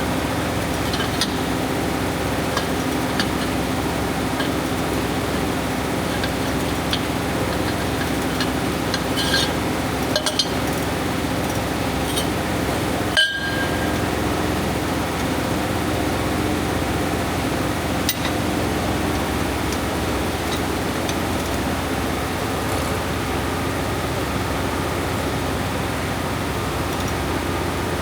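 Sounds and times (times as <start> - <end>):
steady mechanical hum: 0.0 - 28.0
metal tools clinking: 0.8 - 1.6, 2.4 - 10.9, 12.0 - 12.4, 13.1 - 14.5, 18.0 - 21.2.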